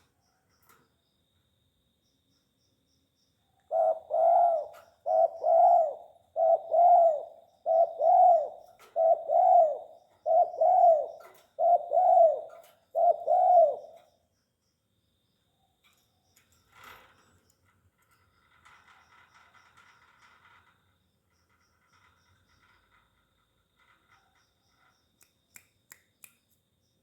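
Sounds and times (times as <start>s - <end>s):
dove cooing: 3.7s - 14.1s.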